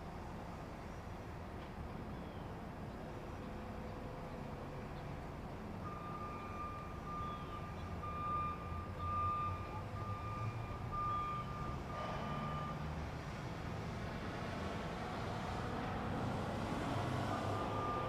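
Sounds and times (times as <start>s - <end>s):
truck engine rumbling: 3.9s - 18.0s
reversing alarm beeping: 5.8s - 12.8s, 17.5s - 18.0s.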